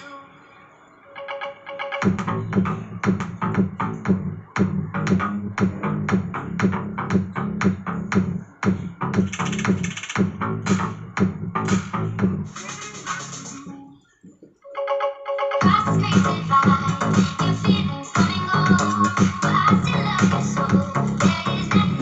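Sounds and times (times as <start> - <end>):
repeated synth notes: 0.7 - 13.7
heavy drum and bass beat: 2.0 - 13.6, 15.6 - 22.0.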